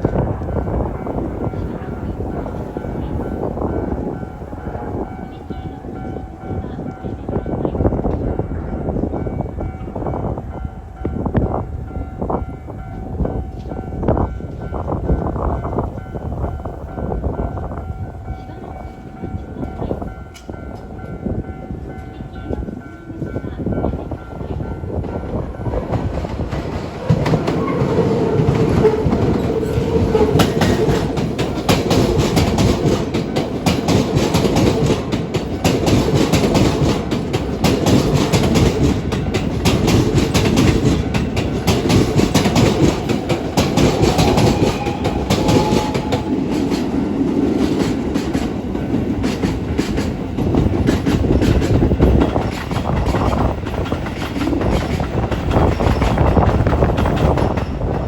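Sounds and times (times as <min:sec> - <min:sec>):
train wheels clacking over rail joints: 0:21.8 - 0:58.0.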